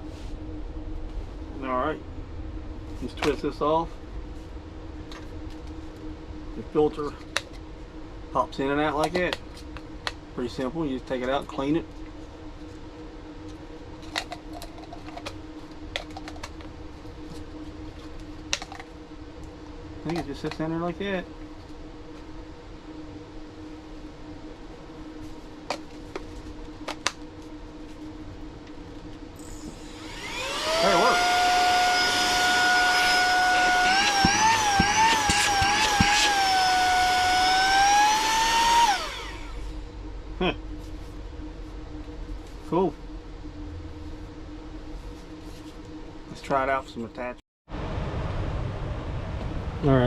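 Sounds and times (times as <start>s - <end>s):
steady hum: 0.0s - 50.0s
mini vacuum cleaner whine: 29.1s - 39.8s.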